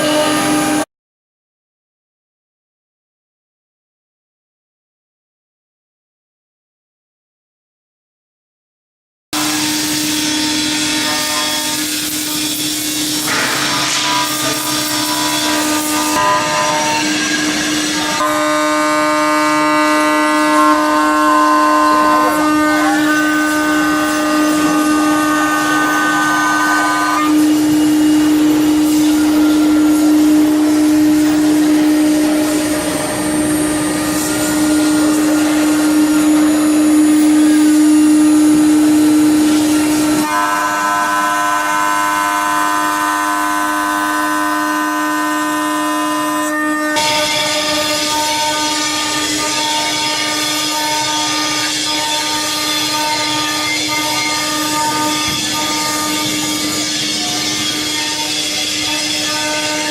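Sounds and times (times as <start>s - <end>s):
router spindle high-speed whine: 0.0s - 0.8s, 9.4s - 59.9s
higher cutting tones: 9.4s - 40.4s.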